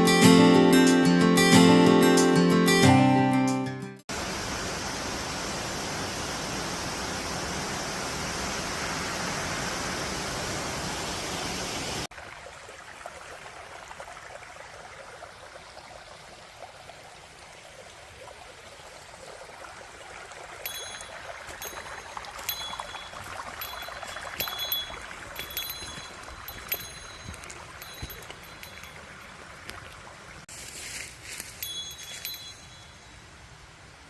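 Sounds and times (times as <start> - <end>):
guitar music: 0.0 - 4.0
rush of flowing water: 4.1 - 30.5.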